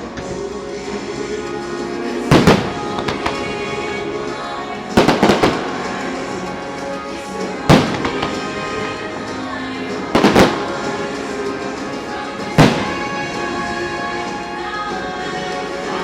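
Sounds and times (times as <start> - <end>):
loud music: 0.0 - 16.0
fireworks bangs: 2.3 - 4.0, 4.9 - 6.5, 7.5 - 9.4, 10.0 - 14.1.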